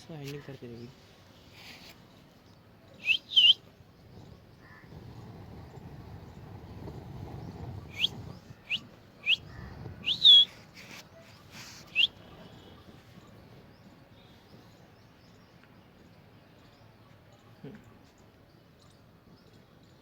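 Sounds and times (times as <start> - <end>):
parrot chirping: 3.0 - 3.6, 10.1 - 10.5
short hissy noises: 10.1 - 12.1.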